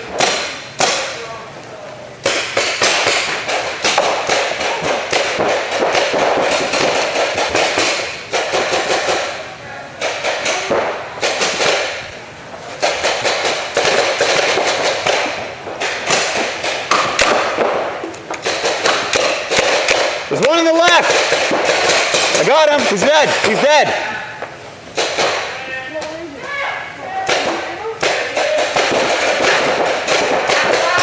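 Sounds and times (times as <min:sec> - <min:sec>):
paintball markers firing: 0:02.2 - 0:09.4, 0:10.0 - 0:12.2, 0:12.8 - 0:24.0, 0:25.0 - 0:25.5, 0:27.2 - 0:31.0.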